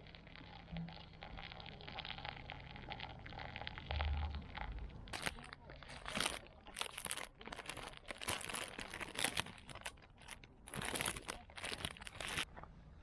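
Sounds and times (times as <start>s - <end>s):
rustling and crinkling: 4.5s - 12.7s.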